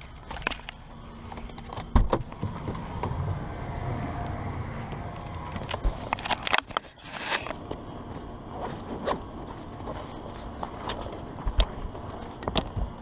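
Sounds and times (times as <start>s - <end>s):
clicks and handling noises: 0.0s - 3.1s, 4.9s - 7.9s
low rumble: 2.2s - 9.9s.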